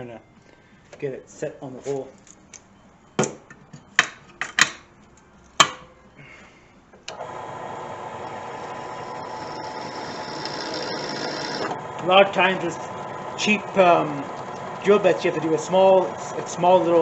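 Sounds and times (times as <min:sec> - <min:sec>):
electric drill drilling metal: 0:07.1 - 0:17.0
drill bit clicks and knocks: 0:09.4 - 0:11.8.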